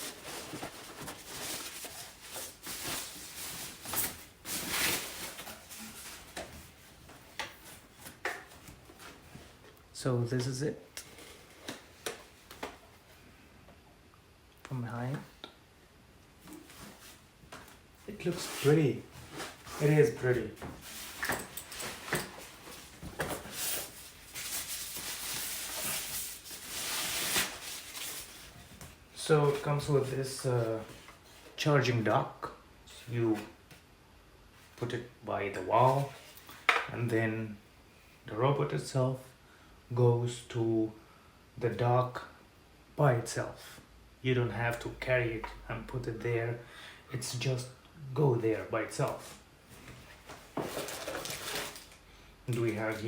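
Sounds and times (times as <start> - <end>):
packaging rustling and crinkling: 0.0 - 9.5, 18.2 - 31.1, 49.7 - 53.0.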